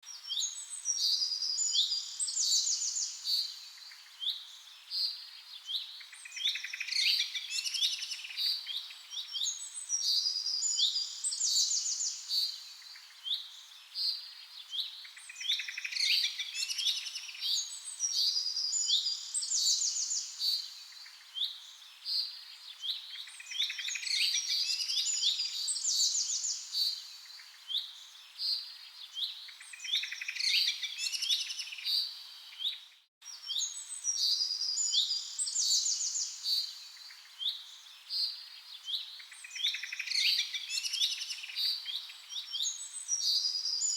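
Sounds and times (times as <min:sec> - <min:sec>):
small birds chirping and twittering: 0:00.0 - 0:43.9.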